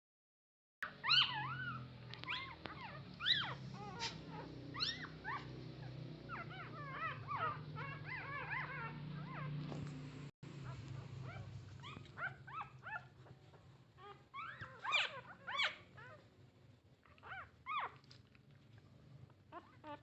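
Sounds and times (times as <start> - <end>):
puppies whimpering and squealing: 0.8 - 9.8, 10.6 - 16.4, 17.0 - 18.0, 19.4 - 20.0.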